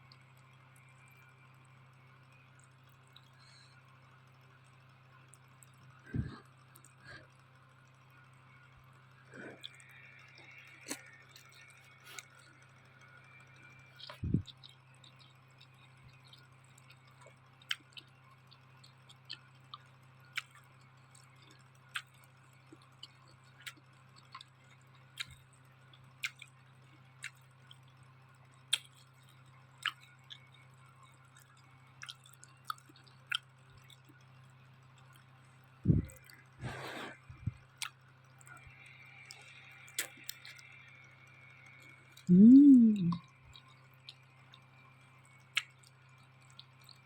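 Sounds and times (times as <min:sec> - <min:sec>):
steady low hum: 0:00.0 - 0:47.0
wet chewing mouth clicks: 0:09.3 - 0:12.6, 0:14.0 - 0:25.4, 0:28.7 - 0:30.5, 0:31.4 - 0:34.2, 0:35.9 - 0:40.8, 0:41.7 - 0:44.6.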